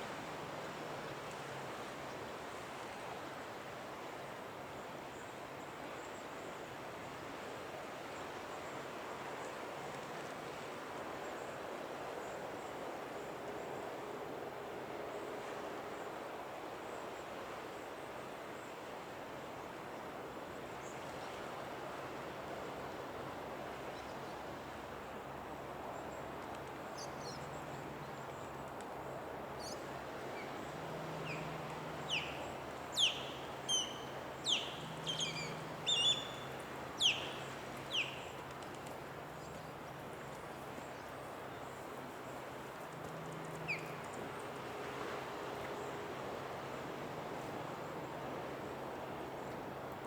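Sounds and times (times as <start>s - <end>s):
steady background hiss: 0.0s - 50.0s
osprey whistled chirps: 32.1s - 38.3s.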